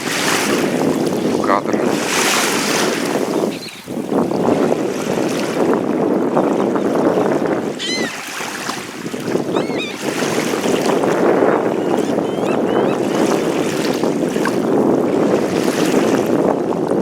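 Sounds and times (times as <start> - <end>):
water washing at shore: 0.0 - 17.0
wind buffeting microphone: 0.0 - 17.0
bird calling: 3.4 - 3.9, 7.8 - 8.3, 9.4 - 10.2, 11.6 - 13.4.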